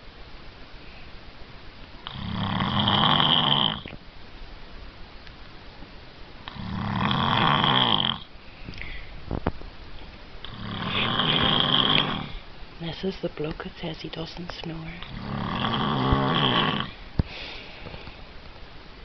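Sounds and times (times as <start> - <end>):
man snoring: 2.0 - 3.9, 6.5 - 8.3, 10.4 - 12.4, 15.1 - 17.0
quiet breathing: 8.2 - 9.3, 15.0 - 18.4.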